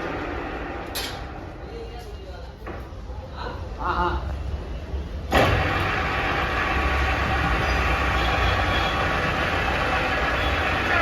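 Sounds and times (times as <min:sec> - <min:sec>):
lathe running with gear whine: 0:05.3 - 0:11.0.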